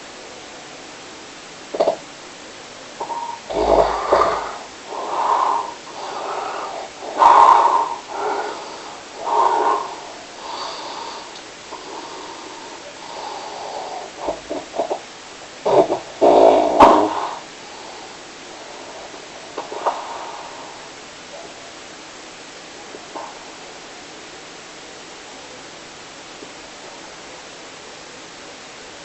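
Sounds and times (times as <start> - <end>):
snoring: 3.0 - 15.0, 15.6 - 18.2.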